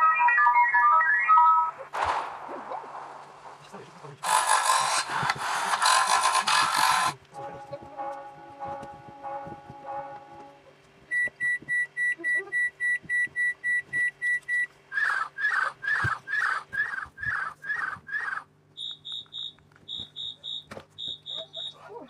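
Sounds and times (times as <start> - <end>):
short electronic beeps: 11.1 - 14.7, 18.8 - 21.8
squeaky electronic chirps: 17.7 - 21.8.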